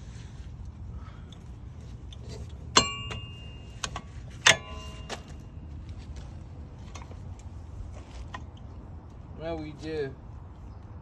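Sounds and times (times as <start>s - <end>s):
metal tools clanking: 2.1s - 5.5s.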